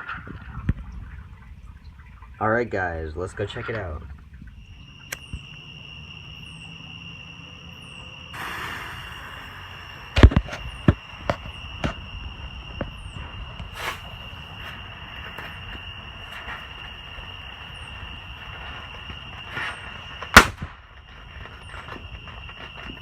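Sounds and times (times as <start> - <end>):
firework hissing: 8.3 - 10.4, 13.6 - 14.6
firework bang: 8.4 - 10.9, 20.3 - 20.9
sharp firework pops: 10.1 - 12.0, 19.6 - 21.0.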